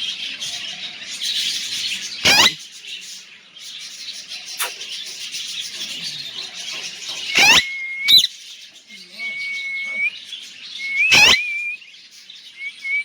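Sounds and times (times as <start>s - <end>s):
parrot screeching: 2.2s - 2.6s, 7.3s - 8.3s, 11.1s - 11.6s.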